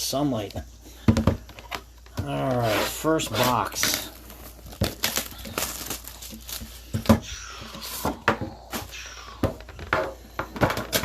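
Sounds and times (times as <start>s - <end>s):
wrapping crinkling: 1.7s - 7.1s.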